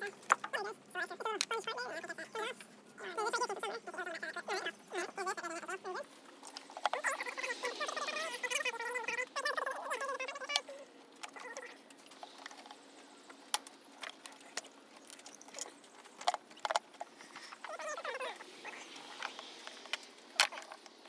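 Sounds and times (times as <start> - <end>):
hand tools clicking and tapping: 10.5 - 17.6.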